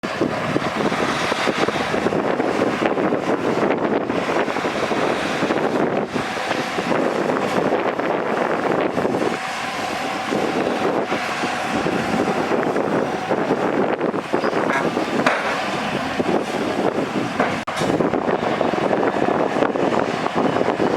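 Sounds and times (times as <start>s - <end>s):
diesel machinery engine running: 0.0s - 20.9s
wind on microphone: 0.0s - 20.9s.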